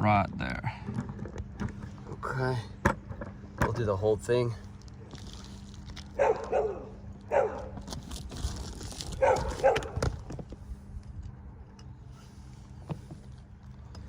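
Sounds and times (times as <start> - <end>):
dog barking: 6.2 - 7.8, 9.2 - 10.0.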